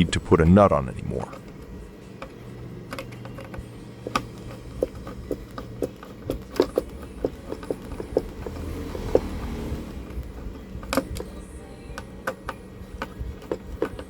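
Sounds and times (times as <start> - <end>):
screwdriver clicks and knocks: 1.3 - 9.4, 10.0 - 14.0
faint steady hum: 9.4 - 14.0.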